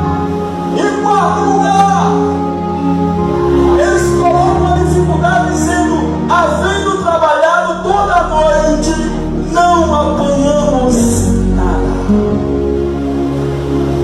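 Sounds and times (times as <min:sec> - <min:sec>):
sustained instrument chords: 0:00.0 - 0:14.0
person singing: 0:07.7 - 0:13.0.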